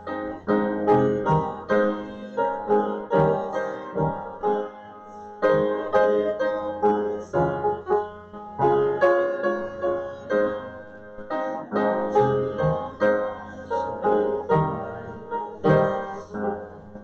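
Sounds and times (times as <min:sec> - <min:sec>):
hymn on piano: 0:00.0 - 0:17.0.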